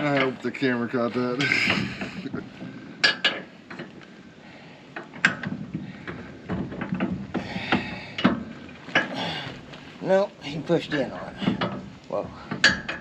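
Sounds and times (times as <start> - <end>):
metal clunks and clatter: 0.0 - 4.0, 5.0 - 9.9, 10.8 - 13.0.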